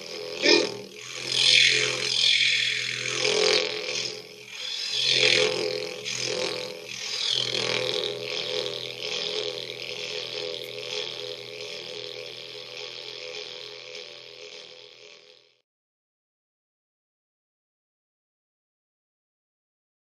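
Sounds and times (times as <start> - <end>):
didgeridoo drone: 0.0 - 15.6.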